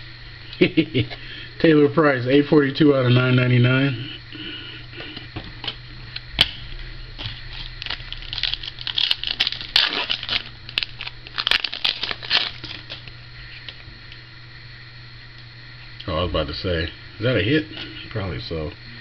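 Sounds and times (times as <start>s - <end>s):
foil wrapper tearing and crackling: 7.2s - 13.2s.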